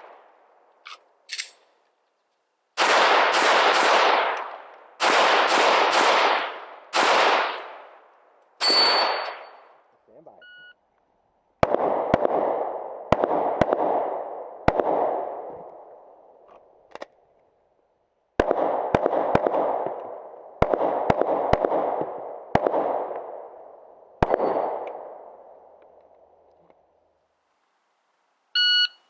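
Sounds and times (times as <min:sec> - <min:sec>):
pistol shots echoing: 0:02.8 - 0:08.0, 0:08.6 - 0:09.7, 0:24.2 - 0:25.1.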